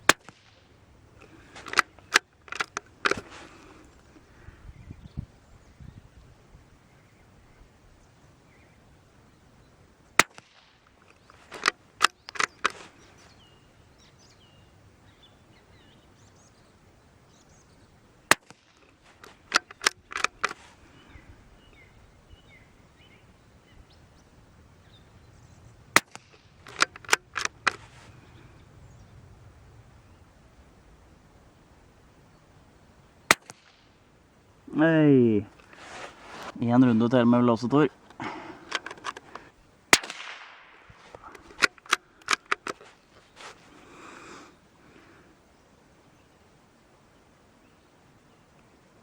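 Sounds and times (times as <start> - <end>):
rifle bolt metallic clicks: 0.0 - 0.6, 1.2 - 3.3, 10.2 - 12.8, 18.3 - 20.6, 26.0 - 28.0, 33.3 - 33.8, 38.1 - 42.9
rifle shots: 0.0 - 3.3, 10.2 - 10.8, 25.9 - 27.9, 33.3 - 33.9, 39.9 - 42.8
faint bird chirps: 3.6 - 10.1, 12.1 - 18.3, 20.6 - 25.9, 27.9 - 33.3.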